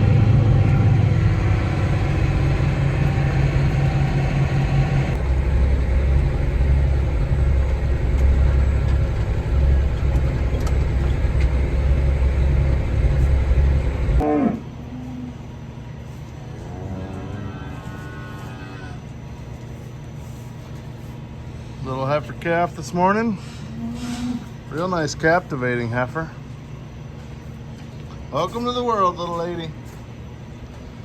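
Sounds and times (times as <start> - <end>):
heavy vehicle engine running: 0.0 - 14.2
cow mooing: 14.2 - 15.4, 16.5 - 19.0, 23.7 - 24.6.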